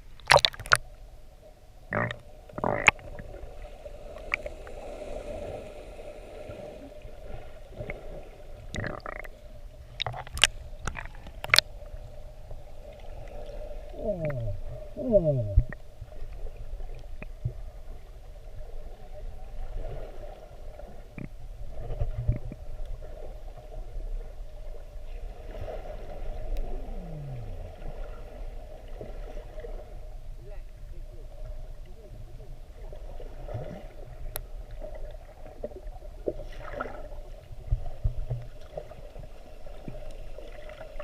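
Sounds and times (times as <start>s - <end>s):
underwater low hum: 0.0s - 41.0s
sharp underwater clicks: 0.1s - 0.8s, 1.9s - 3.2s, 8.7s - 11.7s
muffled gurgling: 1.8s - 41.0s.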